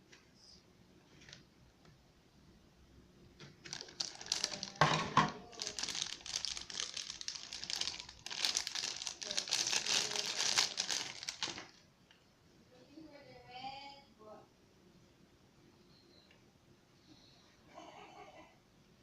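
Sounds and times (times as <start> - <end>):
packaging crinkling: 3.4 - 11.8.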